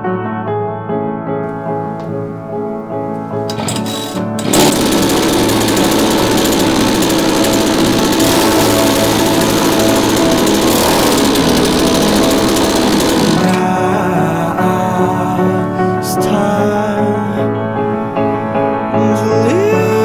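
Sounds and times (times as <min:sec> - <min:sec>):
music: 0:00.0 - 0:04.4, 0:11.5 - 0:20.0
two-stroke engine at high revs: 0:03.5 - 0:13.8.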